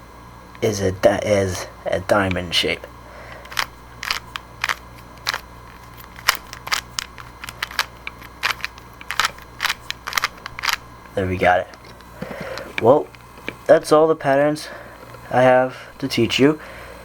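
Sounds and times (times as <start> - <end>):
plastic clicks of cube turning: 3.4 - 10.8.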